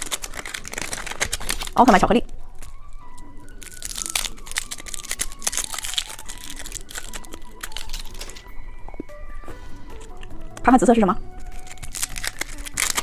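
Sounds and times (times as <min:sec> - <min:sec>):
plastic wrapper crinkling and tearing: 0:00.0 - 0:08.5, 0:11.3 - 0:13.0.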